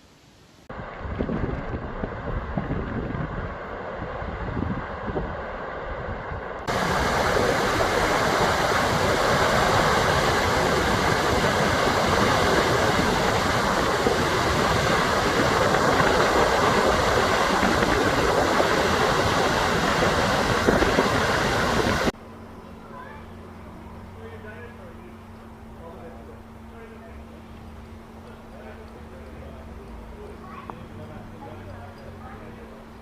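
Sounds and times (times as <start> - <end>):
loud steady rushing noise: 0.0 - 22.2
wind rumble on microphone: 0.7 - 22.1.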